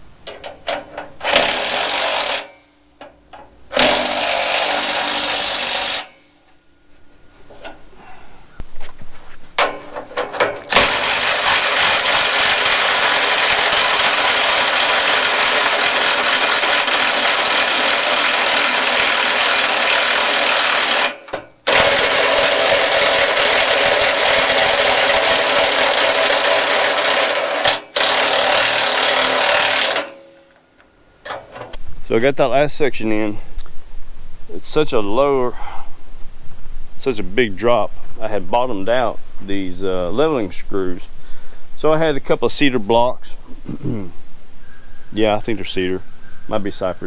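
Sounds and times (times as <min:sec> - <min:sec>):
handheld power tool running: 0:01.2 - 0:02.6, 0:03.7 - 0:06.3, 0:10.6 - 0:30.4.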